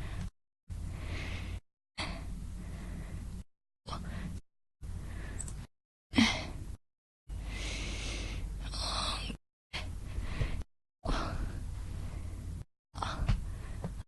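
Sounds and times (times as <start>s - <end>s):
woman breathing and gasping: 7.4s - 11.6s.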